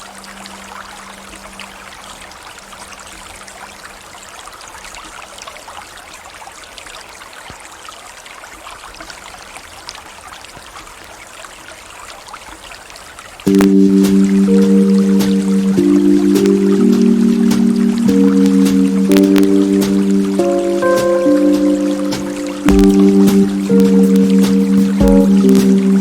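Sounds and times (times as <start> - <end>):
river water flowing: 0.0 - 26.0
small trickles and splashes: 0.0 - 26.0.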